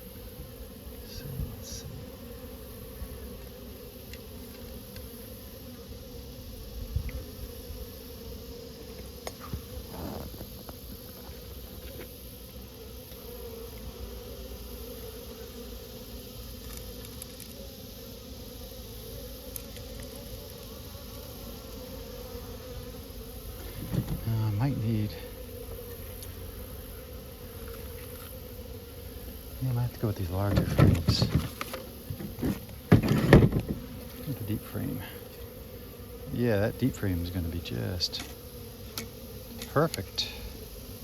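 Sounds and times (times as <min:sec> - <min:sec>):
bees buzzing: 0:00.0 - 0:41.0
faint clicks and scrapes: 0:30.5 - 0:34.3.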